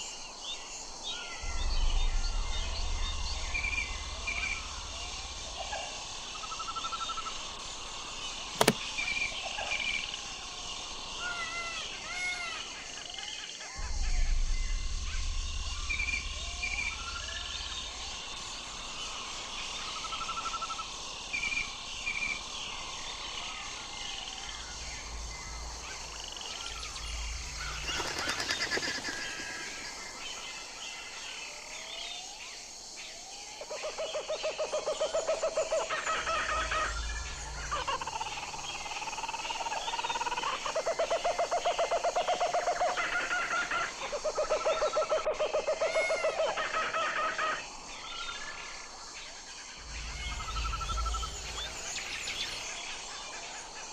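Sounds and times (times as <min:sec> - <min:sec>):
long buzzy pulsing bird calls: 0:00.2 - 0:53.9
albatrosses calling: 0:24.7 - 0:30.4.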